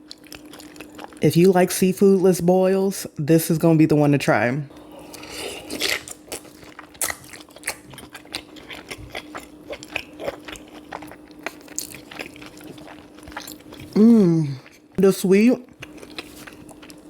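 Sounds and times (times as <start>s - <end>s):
faint steady hum: 0.0s - 17.0s
wet chewing and mouth smacks: 5.1s - 14.0s, 15.7s - 17.0s.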